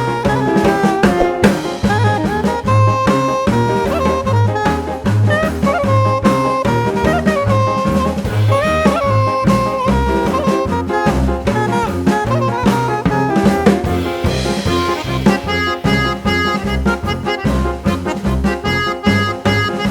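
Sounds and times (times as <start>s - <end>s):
jazz music: 0.0s - 19.9s.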